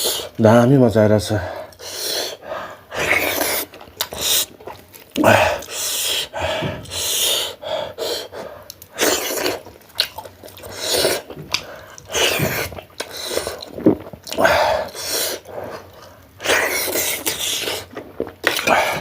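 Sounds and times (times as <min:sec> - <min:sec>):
chewing and slurping food: 0:02.9 - 0:06.0, 0:08.6 - 0:19.0.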